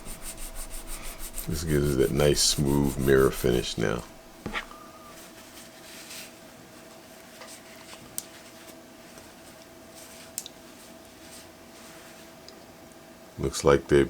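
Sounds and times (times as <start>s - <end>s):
faint steady hum: 0.0s - 6.0s.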